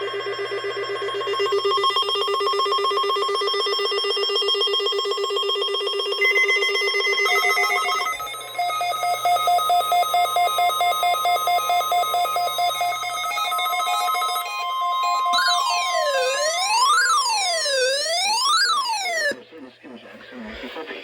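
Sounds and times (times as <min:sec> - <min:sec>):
electronic alarm tone warbling: 0:00.0 - 0:19.4
higher beeping: 0:06.3 - 0:19.4.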